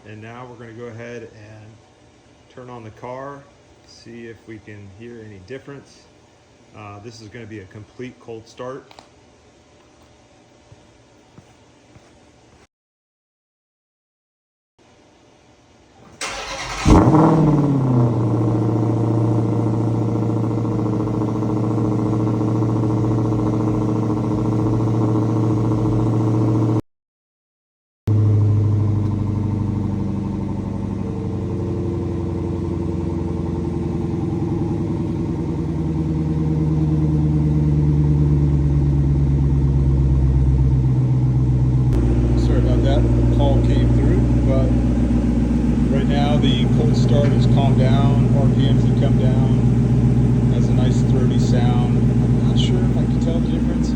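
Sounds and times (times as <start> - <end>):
car engine cold start: 16.0 - 26.8, 28.1 - 53.9
engine fast cold idle: 16.2 - 26.8, 28.1 - 53.9.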